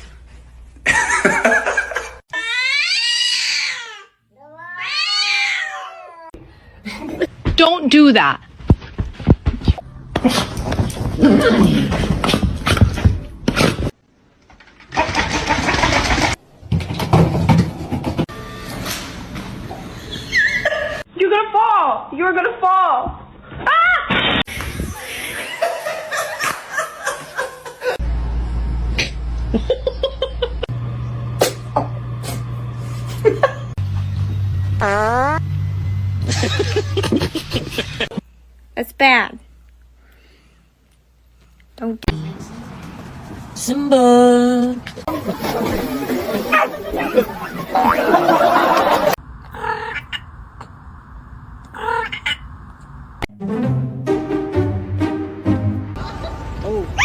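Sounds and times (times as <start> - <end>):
people laughing: 0.9 - 2.2, 24.9 - 28.0, 36.3 - 38.2, 45.0 - 49.2, 55.9 - 57.0
cat yowling: 2.4 - 6.4, 49.5 - 50.3, 51.7 - 52.5
steady low hum: 45.1 - 53.8.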